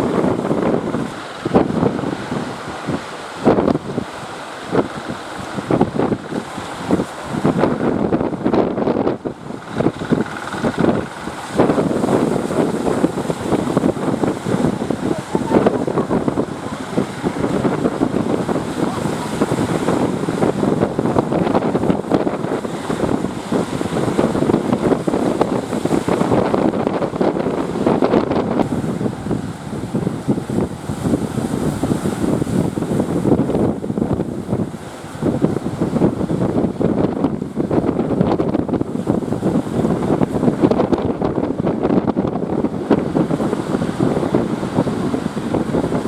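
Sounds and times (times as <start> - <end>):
distant boat engines: 0.0 - 36.6
surf: 0.0 - 46.0
wind buffeting microphone: 0.0 - 46.0.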